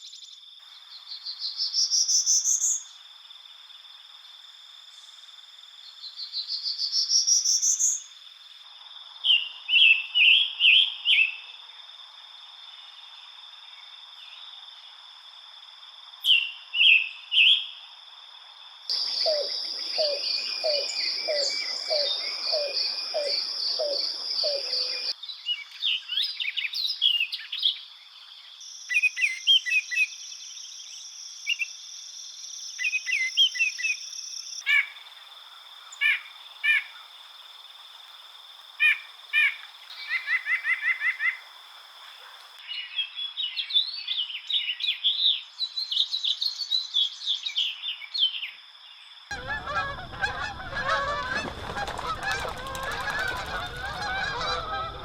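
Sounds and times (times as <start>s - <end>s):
geese honking: 18.9s - 25.1s, 49.3s - 55.0s
songbirds singing and calling: 18.9s - 35.2s, 42.2s - 55.0s.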